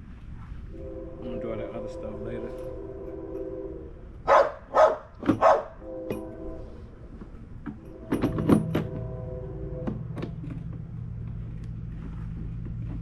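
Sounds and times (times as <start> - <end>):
dog barking: 4.3 - 5.8.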